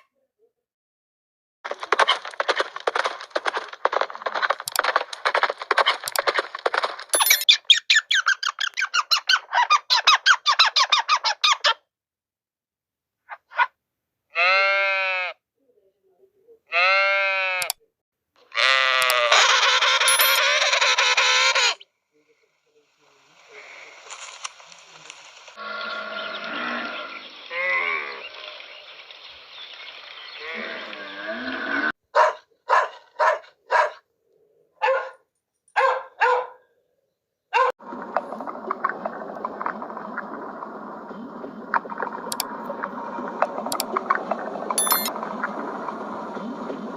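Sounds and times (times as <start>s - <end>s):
short squeaky animal calls: 7.2s - 11.8s, 18.5s - 21.8s
dog barking: 13.4s - 13.8s, 32.1s - 34.1s, 34.8s - 36.7s, 37.5s - 37.8s.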